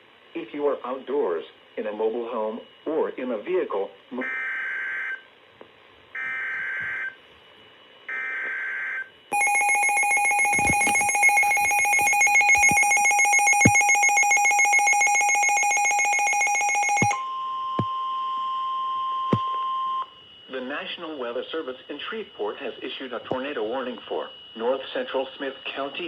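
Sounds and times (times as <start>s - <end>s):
steady warning tone: 8.1s - 18.1s, 19.2s - 26.0s
pulsing two-tone alarm: 8.1s - 26.0s.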